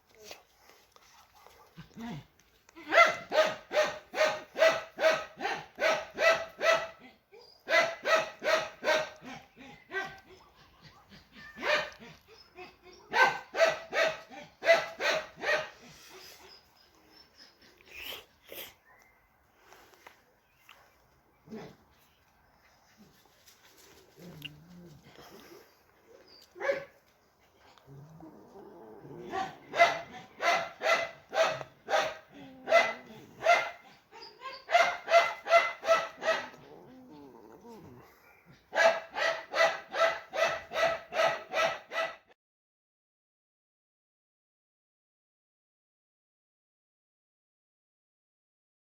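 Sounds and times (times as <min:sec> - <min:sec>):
dog barking: 0:01.0 - 0:02.1, 0:02.8 - 0:07.0, 0:07.6 - 0:12.0, 0:13.1 - 0:15.9, 0:26.6 - 0:27.0, 0:29.2 - 0:33.9, 0:34.6 - 0:36.7, 0:38.4 - 0:42.4.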